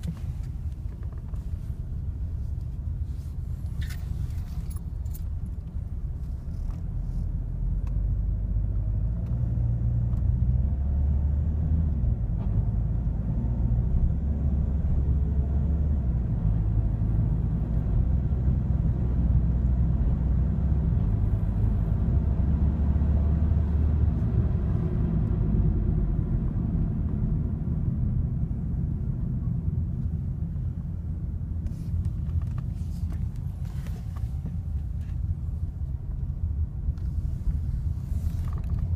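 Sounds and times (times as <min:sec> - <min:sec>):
diesel car engine rumble: 0:00.0 - 0:38.9.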